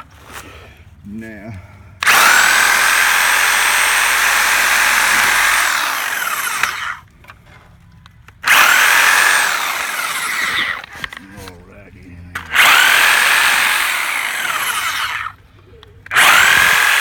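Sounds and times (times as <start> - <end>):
reciprocating saw cutting wood: 2.0 - 7.0, 8.4 - 11.6, 12.4 - 15.4, 16.1 - 17.0.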